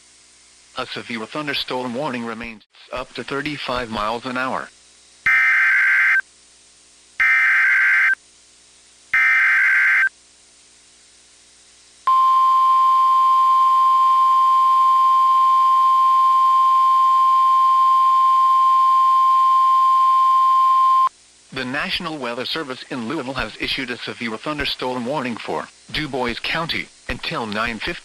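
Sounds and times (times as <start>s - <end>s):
steady warning alarm tone: 5.3s - 6.2s, 7.2s - 8.2s, 9.2s - 10.1s.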